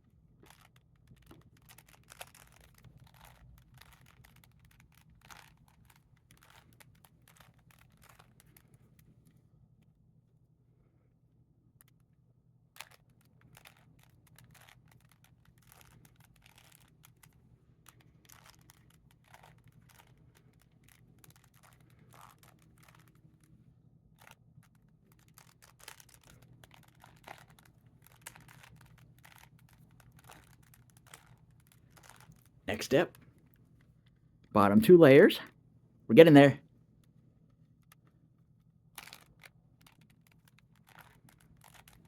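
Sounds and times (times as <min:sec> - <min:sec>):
puzzle cube clicking: 0:00.5 - 0:08.6, 0:12.8 - 0:17.4, 0:18.0 - 0:23.2, 0:25.2 - 0:33.2, 0:39.0 - 0:42.0.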